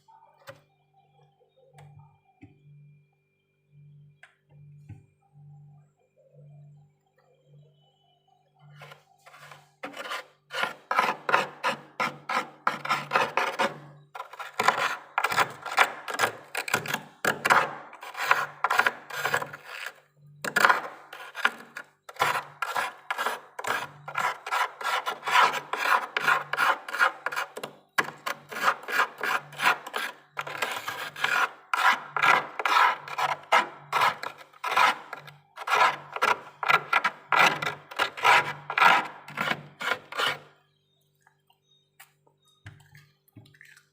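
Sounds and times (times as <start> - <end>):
metal spoon scraping frost: 8.7 - 40.6.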